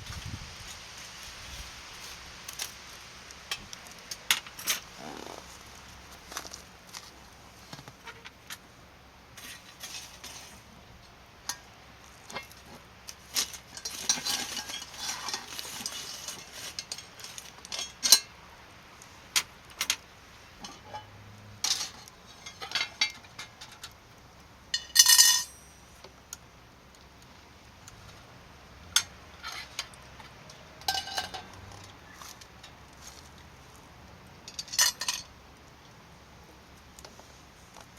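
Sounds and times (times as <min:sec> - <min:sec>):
utensils clicking and scraping cookware: 0:13.2 - 0:18.3.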